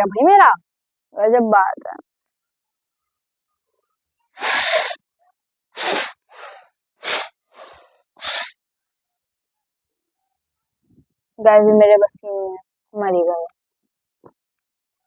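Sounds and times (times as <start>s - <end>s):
woman blowing her nose: 4.4s - 5.0s, 5.8s - 8.6s
faint breaths: 5.8s - 8.6s.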